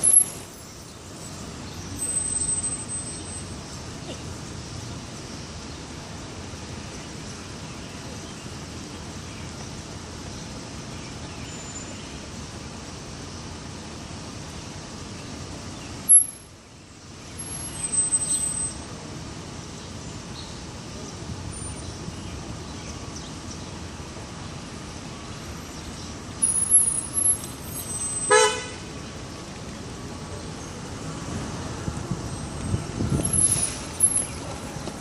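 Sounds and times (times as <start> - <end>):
city road traffic: 0.0 - 35.0
car horn toot: 28.0 - 28.9.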